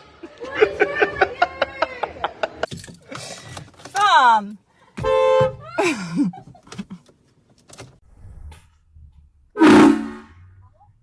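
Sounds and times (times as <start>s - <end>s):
air horn blasts: 5.0s - 5.6s, 9.6s - 10.6s.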